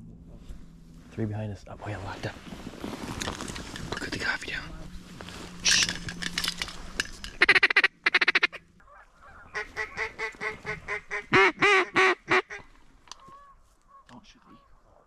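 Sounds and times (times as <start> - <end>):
duck call quacks: 7.4 - 14.0.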